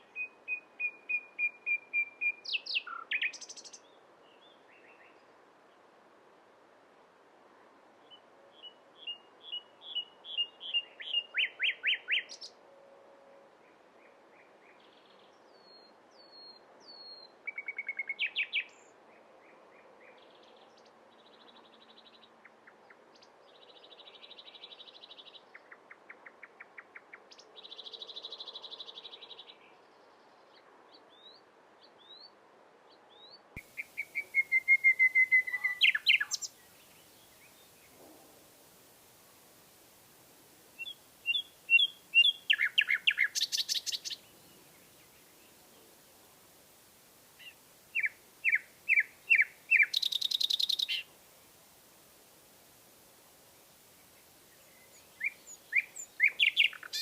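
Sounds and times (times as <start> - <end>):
nightingale singing: 0.0 - 5.2, 8.0 - 12.6, 15.4 - 19.0, 33.1 - 38.0, 40.7 - 45.8, 47.3 - 51.1, 53.7 - 57.0
faint steady background hiss: 0.0 - 57.0.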